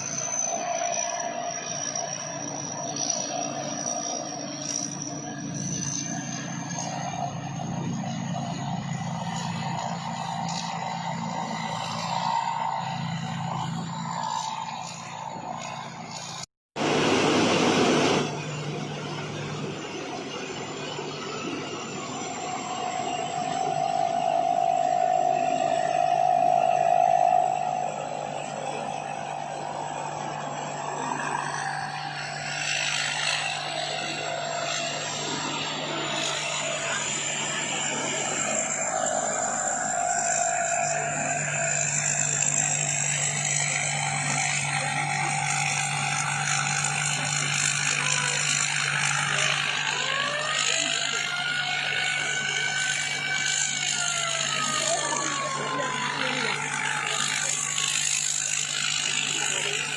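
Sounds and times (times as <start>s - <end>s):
combine harvester engine running: 0.0s - 59.9s
high-pitched whine: 0.0s - 59.9s
loud rushing noise: 16.8s - 19.4s.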